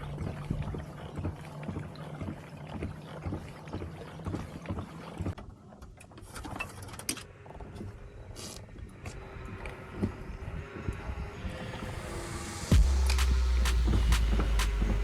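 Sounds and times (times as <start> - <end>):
water lapping on hull: 0.0 - 15.0
low steady hum: 6.7 - 15.0.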